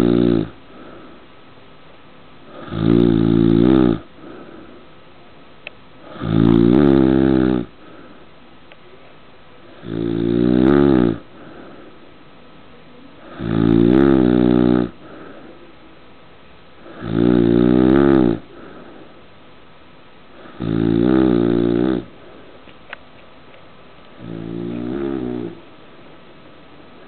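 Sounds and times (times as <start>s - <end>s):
loud pitched snoring: 0.0s - 1.1s, 2.5s - 4.7s, 6.0s - 8.0s, 9.7s - 11.8s, 13.2s - 15.5s, 16.8s - 19.0s, 20.4s - 22.2s, 24.2s - 25.6s.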